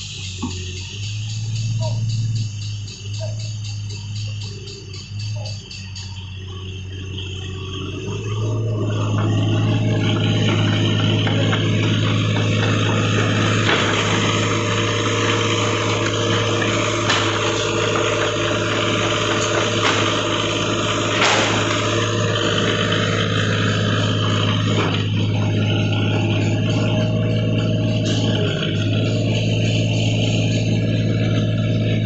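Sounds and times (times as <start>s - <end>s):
excavator diesel engine running: 0.0s - 32.0s
sharp knocks: 21.1s - 21.9s.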